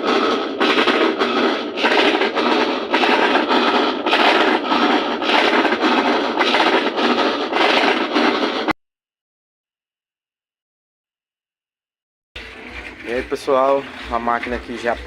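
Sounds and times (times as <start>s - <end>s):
washing machine grinding and scraping: 0.0s - 8.8s, 12.4s - 15.0s.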